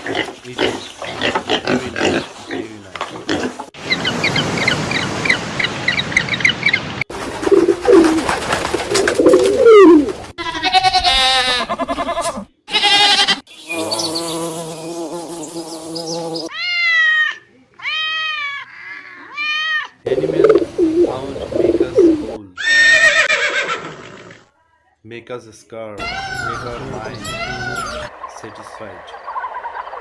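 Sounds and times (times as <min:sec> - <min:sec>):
animal and bird calls: 0:03.8 - 0:10.4, 0:11.9 - 0:16.6, 0:20.0 - 0:23.5, 0:26.0 - 0:30.0.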